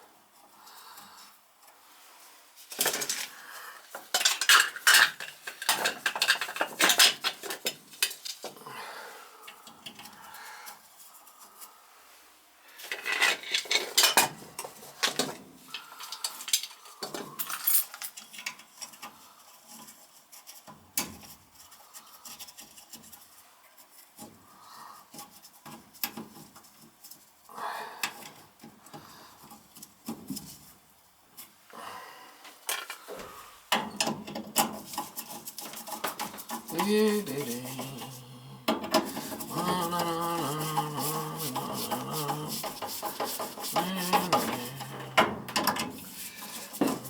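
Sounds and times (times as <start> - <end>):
tools and metal parts clattering: 2.7 - 3.3, 3.9 - 8.5, 12.8 - 19.0, 32.7 - 33.1
metal scraping: 34.7 - 47.0.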